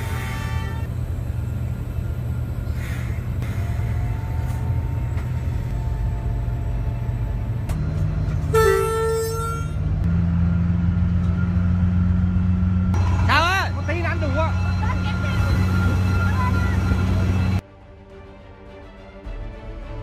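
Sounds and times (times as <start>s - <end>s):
train horn blasts: 0.0s - 0.9s, 8.4s - 9.8s
train rumbling: 0.0s - 17.6s.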